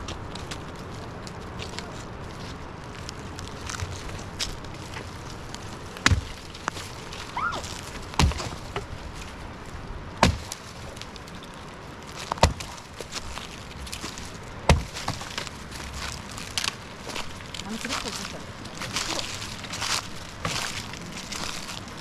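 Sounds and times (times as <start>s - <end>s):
axe chopping firewood: 6.0s - 8.9s, 10.2s - 10.6s, 12.2s - 13.2s, 14.6s - 15.5s.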